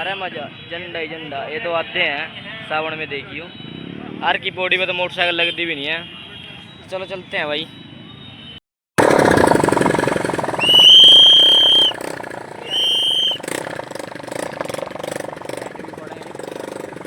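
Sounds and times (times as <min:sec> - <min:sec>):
motorcycle engine running: 0:09.0 - 0:17.0.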